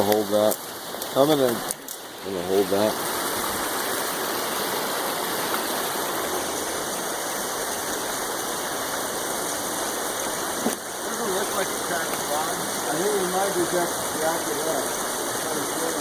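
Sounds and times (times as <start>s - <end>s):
river water rushing: 0.0s - 16.0s.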